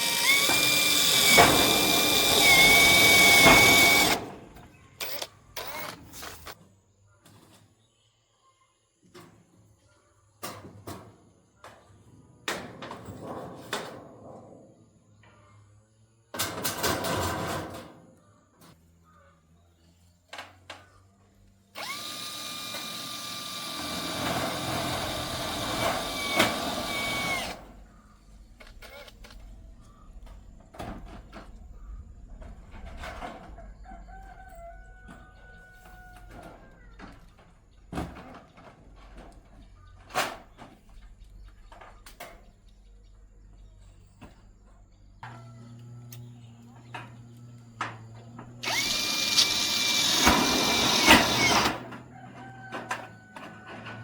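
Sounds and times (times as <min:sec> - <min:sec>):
rooster crowing: 0:33.6 - 0:36.4, 0:51.4 - 0:54.0.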